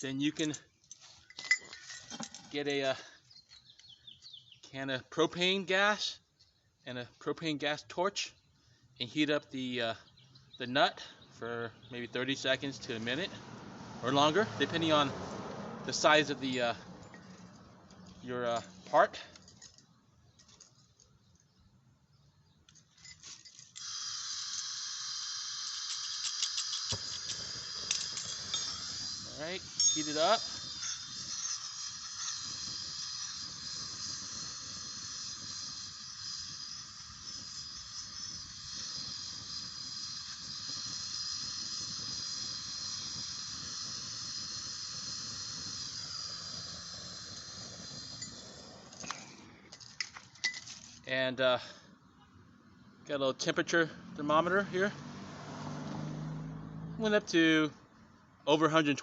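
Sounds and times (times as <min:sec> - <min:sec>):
propane torch hissing: 0:12.2 - 0:17.0, 0:23.8 - 0:50.4.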